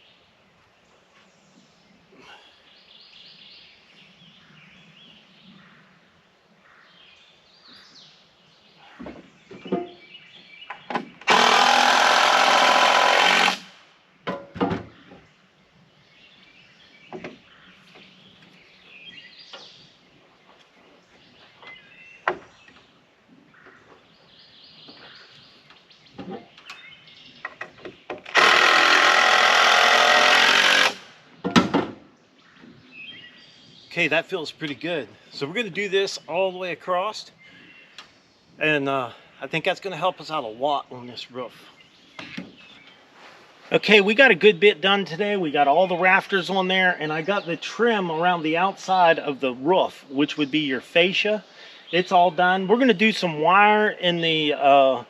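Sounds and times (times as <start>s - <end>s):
knocks of wood and tools: 9.0s - 10.0s, 14.2s - 15.2s, 17.1s - 18.1s, 21.6s - 22.8s, 27.4s - 32.8s
power drill driving screw: 11.2s - 13.8s, 28.2s - 31.1s.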